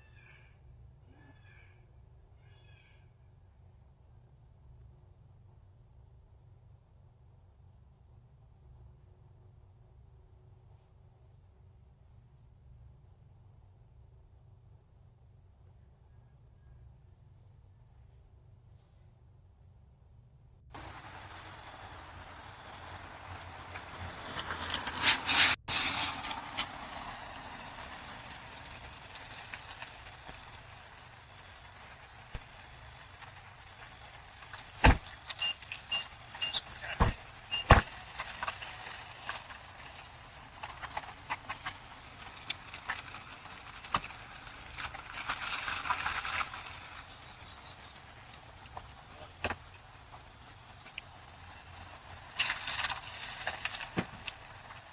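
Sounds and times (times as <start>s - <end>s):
crickets chirping: 0.0s - 54.9s
rustling: 20.8s - 54.9s.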